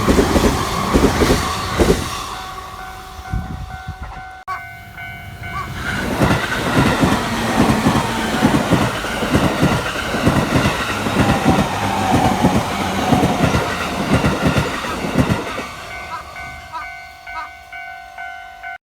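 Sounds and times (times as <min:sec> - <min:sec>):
train wheels clattering over rail joints: 0:00.0 - 0:04.4, 0:05.6 - 0:16.1
electronic crossing warning bell: 0:02.2 - 0:11.6, 0:13.1 - 0:18.8.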